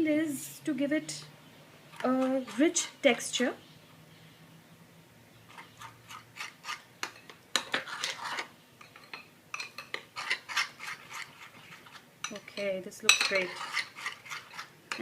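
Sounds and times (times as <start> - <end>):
utensil scraping mixing bowl: 5.5 - 15.0.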